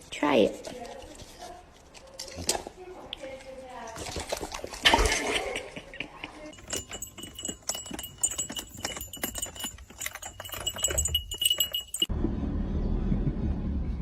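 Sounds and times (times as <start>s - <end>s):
rapid clicking and rattling: 6.6s - 12.1s.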